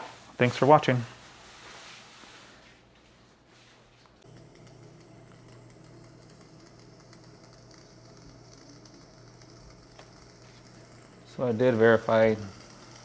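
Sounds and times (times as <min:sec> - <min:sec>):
steam cleaner humming: 0:04.2 - 0:13.0
steam hissing: 0:04.2 - 0:13.0.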